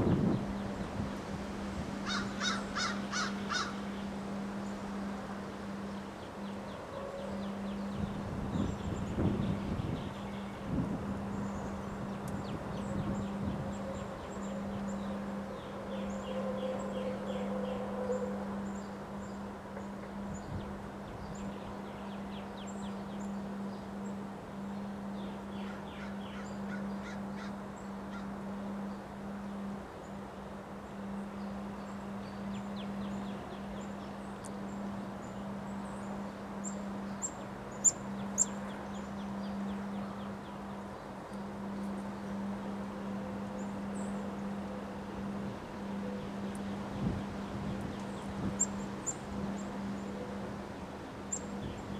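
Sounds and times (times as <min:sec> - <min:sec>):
steady low hum: 0:00.0 - 0:51.9
birds calling: 0:02.0 - 0:04.8.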